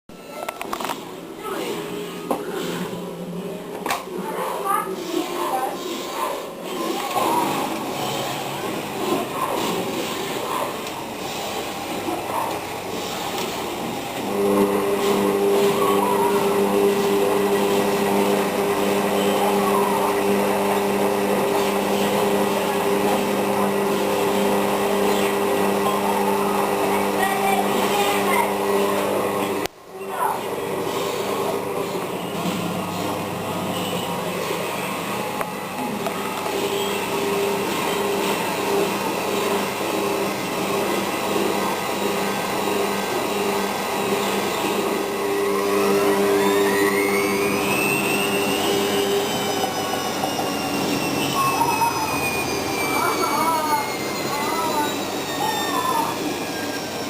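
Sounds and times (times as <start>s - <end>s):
steady hum: 0.1s - 57.0s
washing machine spinning: 0.1s - 57.0s
rising drum whine: 30.7s - 57.0s.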